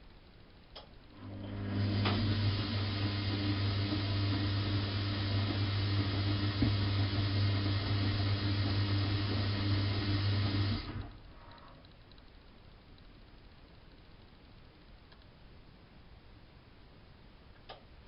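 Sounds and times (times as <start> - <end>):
washing machine hum: 1.1 - 11.6.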